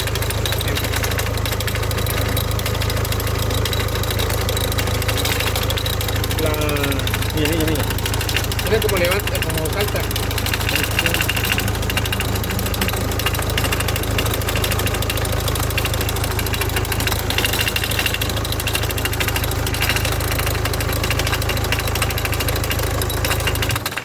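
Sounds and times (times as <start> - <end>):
clutch bearing rattle: 0.0 - 24.0
diesel engine idling: 0.0 - 24.0.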